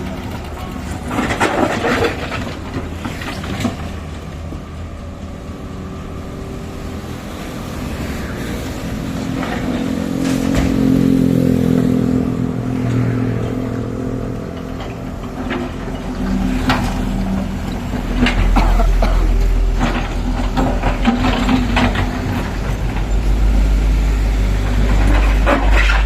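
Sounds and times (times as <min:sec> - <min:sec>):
knocks and clatter: 0:00.0 - 0:04.8, 0:09.0 - 0:12.0, 0:14.4 - 0:23.6
heavy vehicle engine: 0:00.0 - 0:26.0.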